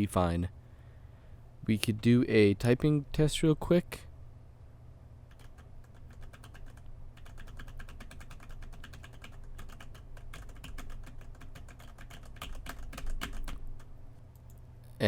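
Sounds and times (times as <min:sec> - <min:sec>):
steady low hum: 0:00.0 - 0:15.0
typing on computer keyboard: 0:05.3 - 0:14.6.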